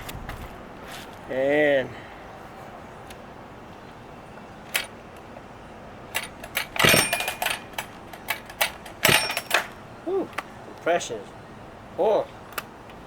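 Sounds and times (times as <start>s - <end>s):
chainsaw recoil starter pulls: 6.2s - 9.7s.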